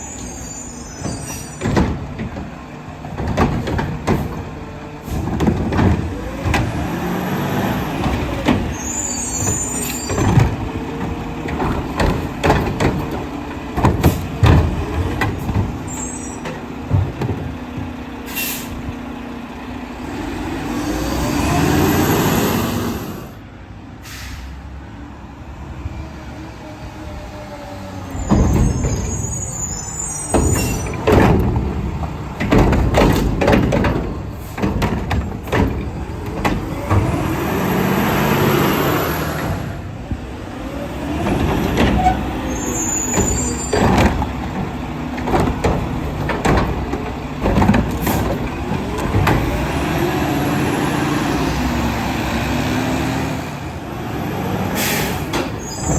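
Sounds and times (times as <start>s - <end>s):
diesel engine running: 26.8s - 55.9s
collection gear bangs and clanks: 28.2s - 38.0s, 41.2s - 49.7s.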